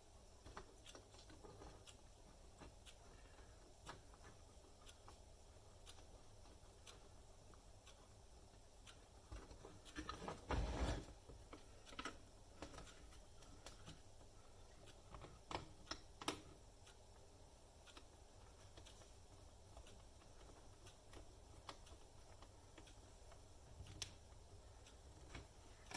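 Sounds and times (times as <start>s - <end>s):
small parts clicking and tapping: 0.2s - 10.5s, 11.2s - 25.9s.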